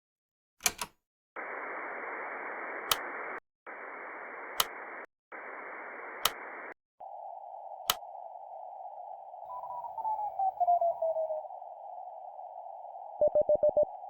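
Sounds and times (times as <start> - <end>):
radio static bursts: 1.4 - 14.0
sharp click: 7.8 - 8.0.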